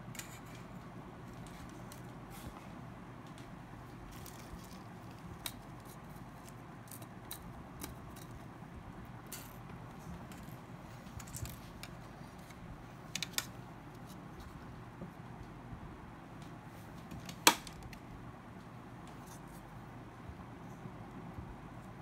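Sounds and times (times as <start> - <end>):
steady low hum: 0.0 - 22.0
tools and phone parts clicking: 0.1 - 0.7.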